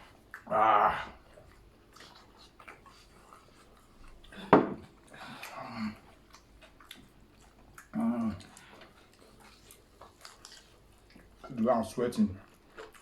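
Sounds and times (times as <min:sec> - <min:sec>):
person chewing food: 0:00.0 - 0:13.0
mouth and bone clicks: 0:05.4 - 0:13.0.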